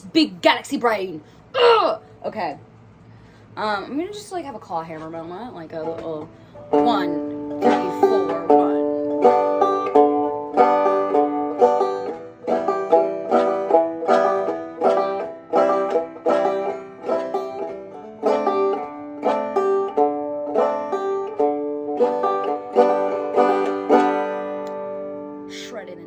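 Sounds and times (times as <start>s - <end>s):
banjo plucked and strummed: 5.0s - 25.7s.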